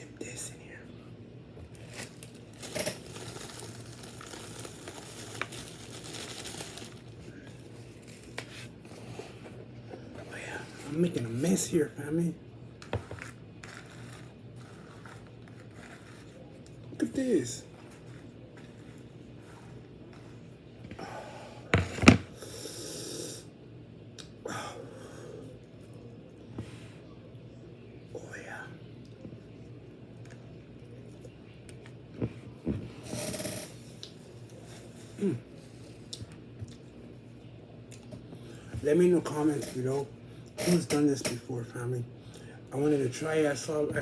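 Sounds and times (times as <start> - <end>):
rustling and crinkling of food: 1.6 - 11.4, 12.8 - 20.8.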